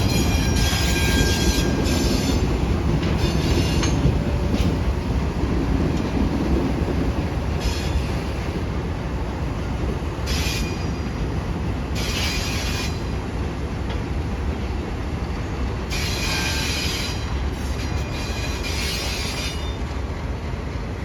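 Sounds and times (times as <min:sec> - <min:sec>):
train wheel squeal: 0:00.0 - 0:04.7, 0:07.6 - 0:08.4, 0:10.2 - 0:11.3, 0:11.9 - 0:13.2, 0:15.4 - 0:20.0
freight train rumbling: 0:00.0 - 0:21.0.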